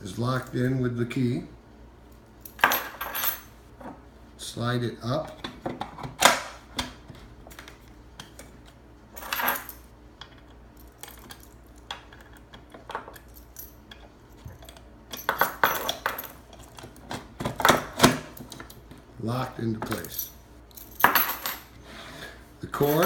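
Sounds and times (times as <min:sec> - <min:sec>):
metal coin box clinking and scraping: 0:02.5 - 0:03.5, 0:09.2 - 0:09.8, 0:10.8 - 0:16.8, 0:22.7 - 0:23.0.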